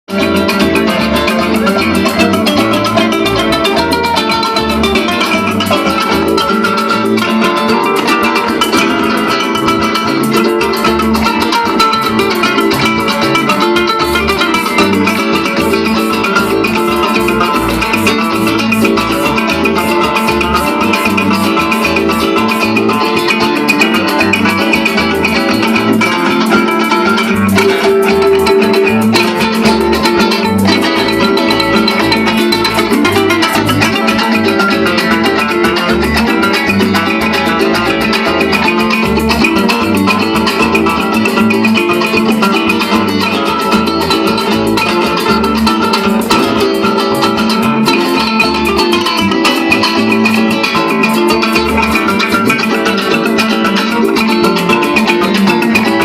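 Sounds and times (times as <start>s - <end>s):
plucked string melody: 0.0s - 56.0s
steady bass line: 0.1s - 56.0s.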